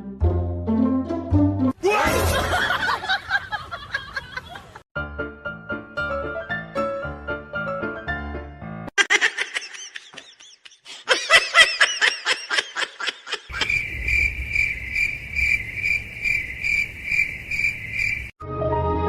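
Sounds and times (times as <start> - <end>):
high-pitched chirping: 13.5 - 18.3.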